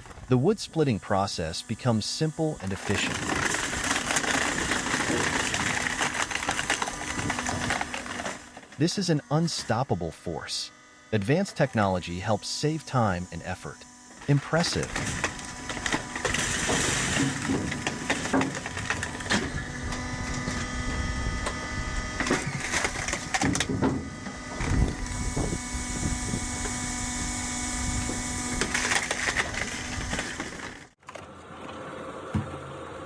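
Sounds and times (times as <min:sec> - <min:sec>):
wood splitter humming: 0:00.0 - 0:33.0
logs cracking and splitting: 0:02.6 - 0:09.0, 0:14.1 - 0:31.4.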